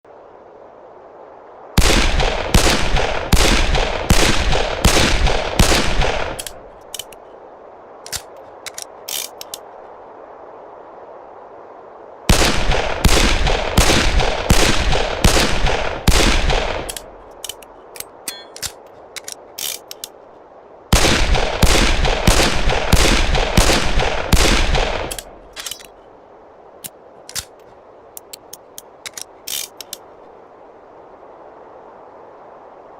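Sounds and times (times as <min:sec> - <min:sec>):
light metallic clicks: 0:08.0 - 0:09.7, 0:16.8 - 0:20.2, 0:26.8 - 0:30.1.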